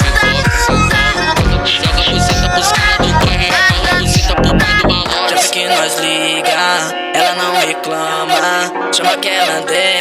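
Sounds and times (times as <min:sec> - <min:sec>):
sliding bass kick: 0:00.0 - 0:05.2
funk dance music: 0:00.0 - 0:10.0.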